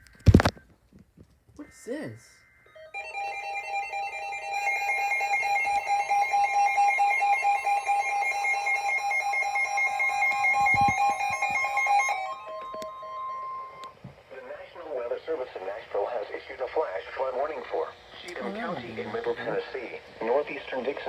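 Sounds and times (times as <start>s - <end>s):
harsh two-tone alarm: 1.6s - 14.2s.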